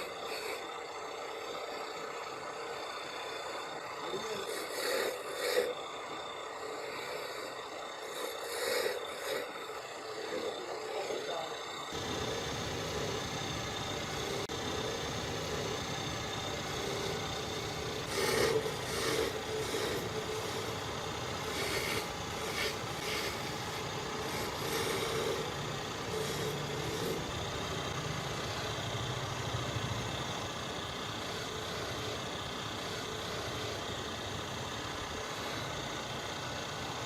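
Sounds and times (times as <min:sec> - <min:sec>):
abrasive rasping on workpiece: 0:00.0 - 0:01.2, 0:03.0 - 0:13.2, 0:15.5 - 0:27.9
power tool humming: 0:00.0 - 0:37.0.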